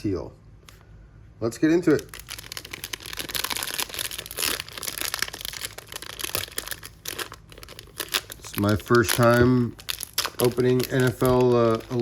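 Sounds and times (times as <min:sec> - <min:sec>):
plastic wrapper tearing and crinkling: 0:01.9 - 0:12.0.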